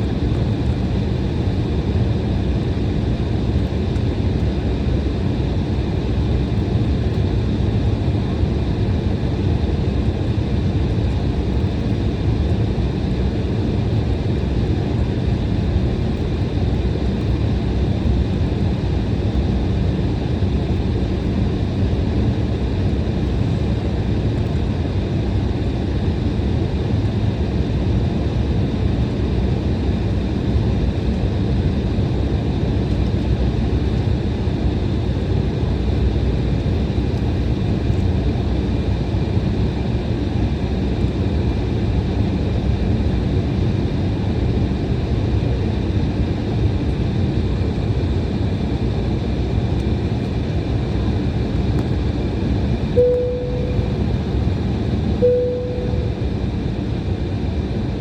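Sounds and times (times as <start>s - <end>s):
airliner engine rumble and airflow: 0.0s - 58.0s
faint high tones: 53.0s - 54.2s, 55.2s - 56.4s.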